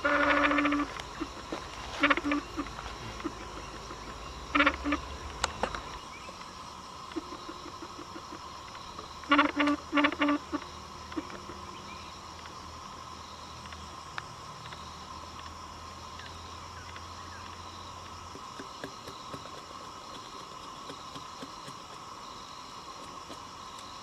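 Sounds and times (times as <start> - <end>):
distant machine drone: 0.0 - 12.2
insect chorus: 0.0 - 24.0.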